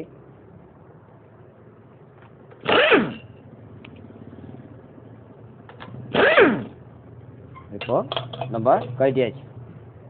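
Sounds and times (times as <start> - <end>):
power wrench spinning: 2.6 - 3.3, 6.1 - 6.7.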